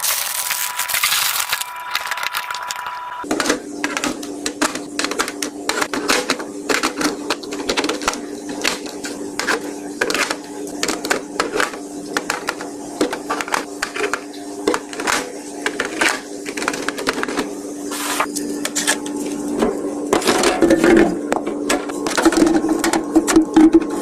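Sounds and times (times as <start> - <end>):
plastic rustling: 0.0 - 2.8
groceries clicking and knocking: 0.0 - 17.5, 18.6 - 24.0.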